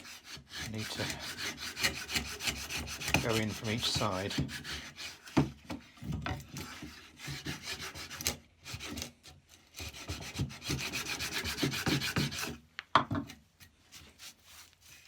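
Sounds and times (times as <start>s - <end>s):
plane blade scraping wood: 0.0s - 5.8s, 6.4s - 12.6s.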